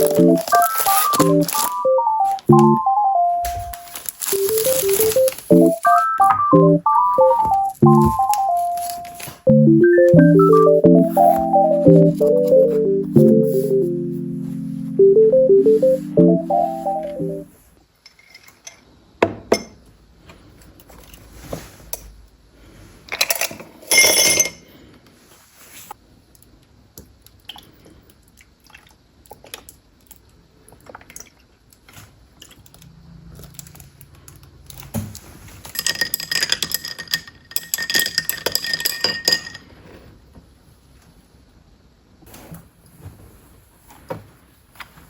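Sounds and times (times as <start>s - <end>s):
rapid clinking on glass: 35.8s - 39.6s.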